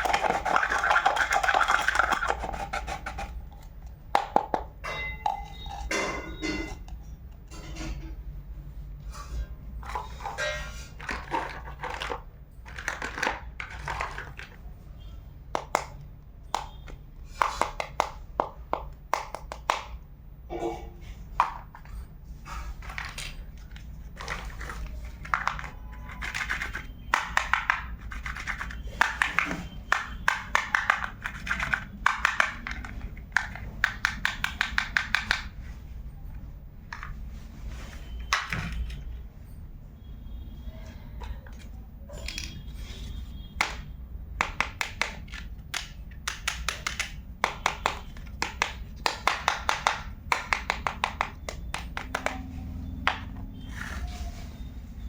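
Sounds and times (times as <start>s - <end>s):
plastic toy pieces clicking: 22.8s - 35.5s, 44.4s - 52.4s.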